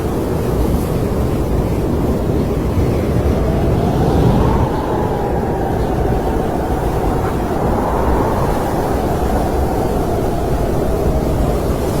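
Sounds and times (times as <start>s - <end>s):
snowstorm wind rushing: 0.1s - 12.0s.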